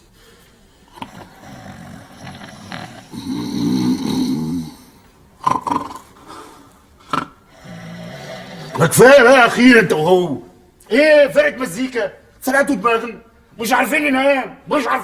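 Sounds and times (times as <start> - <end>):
men snoring loudly: 0.8 - 9.2.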